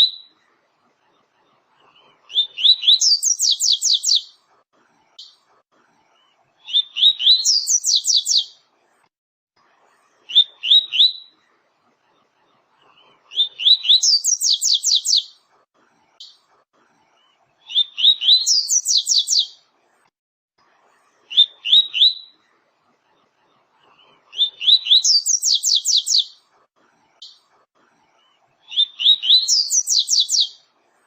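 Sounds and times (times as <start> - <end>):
seedeater bird singing: 2.3 - 4.3, 6.7 - 8.5, 13.3 - 15.3, 17.7 - 19.6, 24.4 - 26.4, 28.7 - 30.6.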